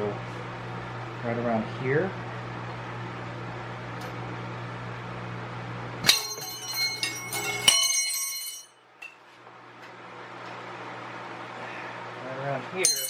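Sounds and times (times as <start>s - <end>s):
metal strike with bell-like ringing: 6.0s - 8.8s, 12.8s - 13.0s
metal tools clanking: 6.0s - 9.2s, 12.8s - 13.0s.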